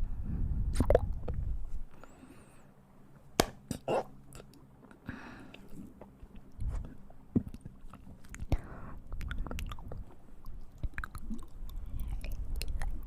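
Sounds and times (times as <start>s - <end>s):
mouth clicks and smacks: 0.7s - 1.4s, 3.4s - 13.0s
faint chewing: 3.7s - 13.0s.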